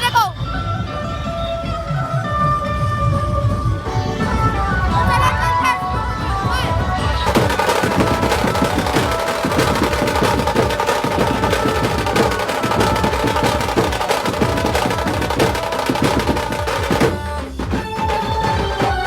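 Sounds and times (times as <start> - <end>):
fast dense drumming: 6.2 - 19.0.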